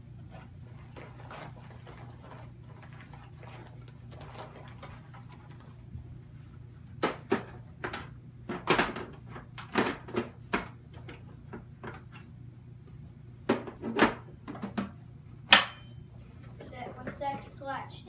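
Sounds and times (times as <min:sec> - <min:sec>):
low steady hum: 0:10.6 - 0:18.0.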